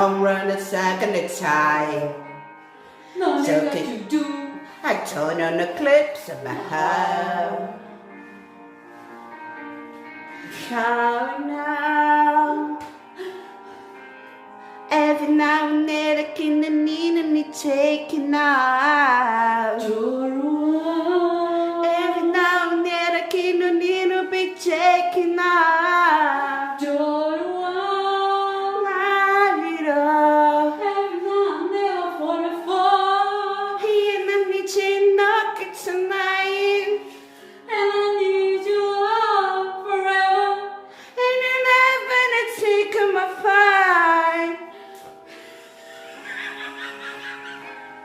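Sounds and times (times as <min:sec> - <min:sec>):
woman singing unaccompanied: 0:00.0 - 0:02.2, 0:03.2 - 0:07.8, 0:10.6 - 0:12.8, 0:14.9 - 0:37.0, 0:37.7 - 0:44.7
woman breathing: 0:02.5 - 0:03.3, 0:04.6 - 0:04.8, 0:13.0 - 0:14.9, 0:37.0 - 0:37.7, 0:40.8 - 0:41.2, 0:44.7 - 0:46.2.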